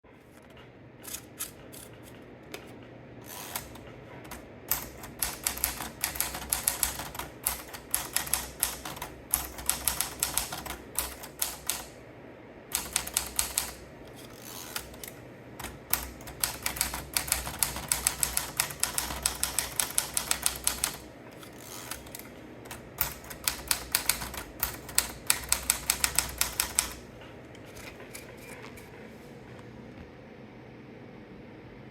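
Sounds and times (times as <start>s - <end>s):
manual typewriter typing: 3.2s - 12.0s, 12.7s - 28.8s.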